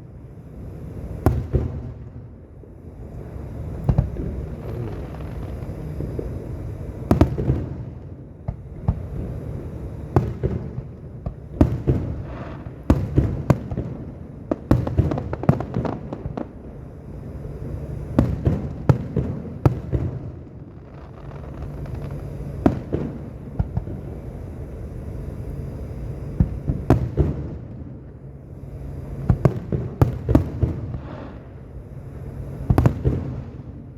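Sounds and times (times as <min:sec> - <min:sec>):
low background noise: 0:00.0 - 0:33.9
fireworks bangs: 0:00.8 - 0:02.2, 0:03.0 - 0:33.9.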